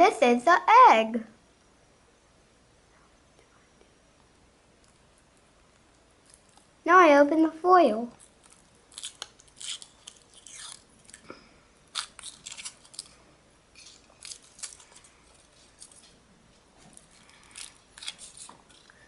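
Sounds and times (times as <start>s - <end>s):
foil wrapper crinkling: 8.2s - 11.2s, 11.9s - 13.2s, 13.8s - 16.2s, 16.9s - 19.0s.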